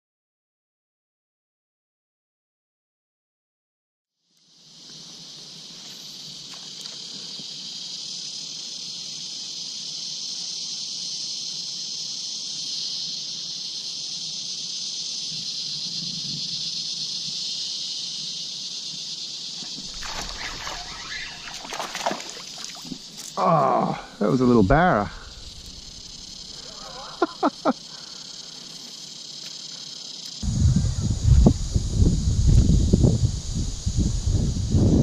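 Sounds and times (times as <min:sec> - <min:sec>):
high-pitched insect drone: 0:04.2 - 0:35.0
fish splashing at surface: 0:19.6 - 0:23.0.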